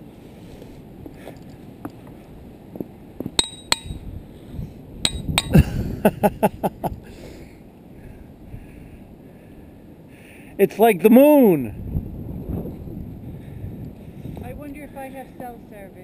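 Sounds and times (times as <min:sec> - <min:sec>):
hammer striking ringing rocks: 0:03.3 - 0:04.1, 0:05.0 - 0:05.7.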